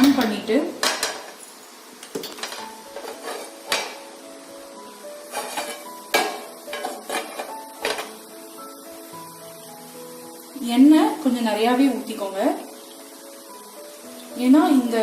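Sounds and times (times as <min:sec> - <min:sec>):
metal cookware knocking: 0:00.0 - 0:01.4, 0:02.2 - 0:04.0, 0:05.3 - 0:08.1
soft background music: 0:00.0 - 0:15.0.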